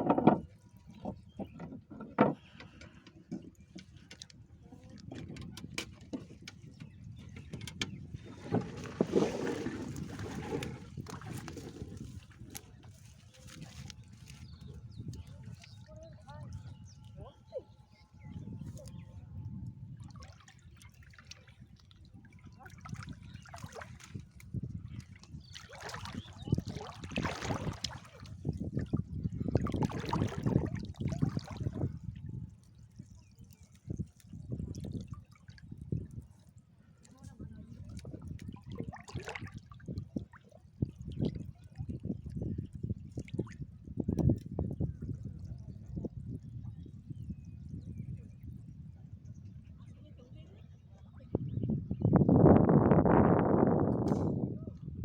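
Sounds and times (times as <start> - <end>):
water splashing and sloshing: 0.0 - 17.8, 19.9 - 47.2
river water splashing: 8.4 - 14.4, 20.1 - 24.5, 25.1 - 28.9, 29.5 - 31.8, 37.9 - 40.4.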